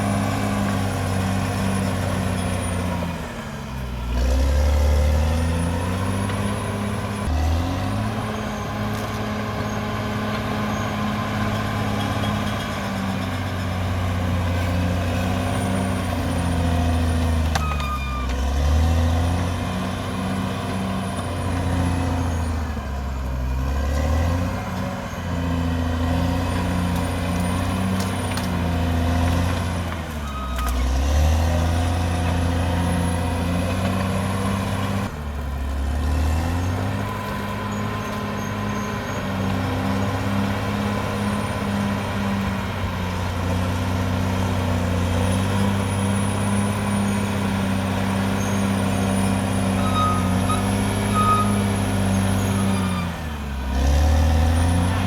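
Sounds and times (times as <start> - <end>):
bulldozer diesel engine working: 0.0 - 55.0
reversing alarm beeps: 49.8 - 51.8.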